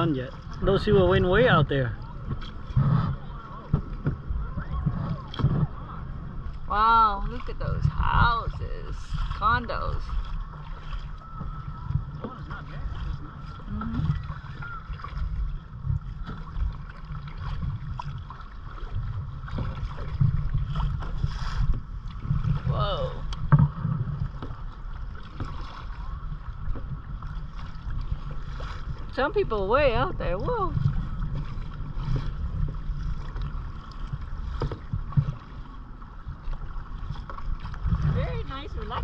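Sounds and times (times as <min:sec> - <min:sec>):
faint paddling water sounds: 0:00.0 - 0:39.0
wind buffeting microphone: 0:00.0 - 0:39.0.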